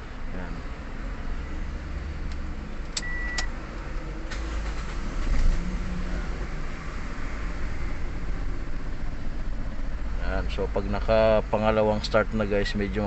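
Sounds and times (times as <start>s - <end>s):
car engine running: 2.2s - 13.0s.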